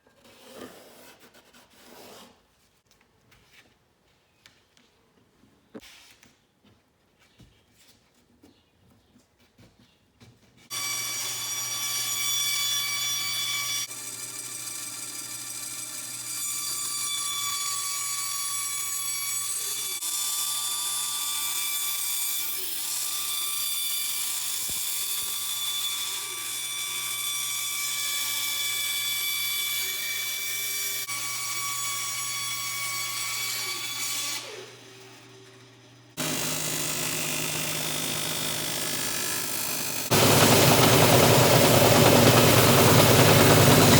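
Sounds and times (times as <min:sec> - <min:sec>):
small power tool motor whining: 0:36.2 - 0:43.9
hissing machine: 0:40.0 - 0:43.9.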